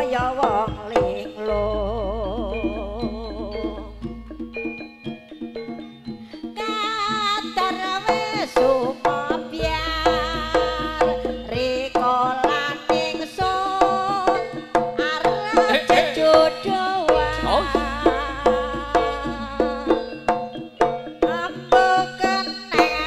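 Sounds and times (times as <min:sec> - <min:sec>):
hand drums beating: 0:00.0 - 0:23.0
melody line: 0:01.5 - 0:07.6.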